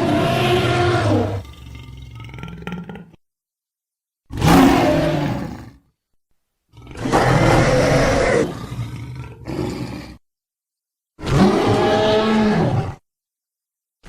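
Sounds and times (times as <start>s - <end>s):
dinosaur roar: 0.0s - 3.2s, 4.3s - 5.8s, 6.7s - 10.2s, 11.2s - 13.0s.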